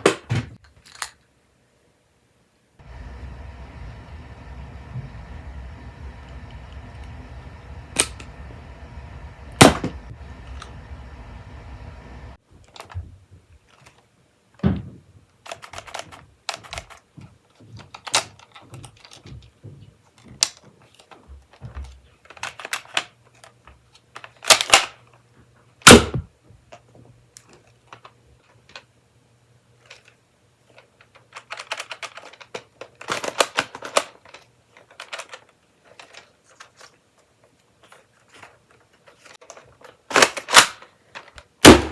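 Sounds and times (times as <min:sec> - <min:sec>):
low steady hum: 0:02.8 - 0:13.8
plastic toy blasters clicking: 0:15.4 - 0:17.0, 0:22.3 - 0:25.0, 0:29.8 - 0:36.9, 0:39.2 - 0:41.9.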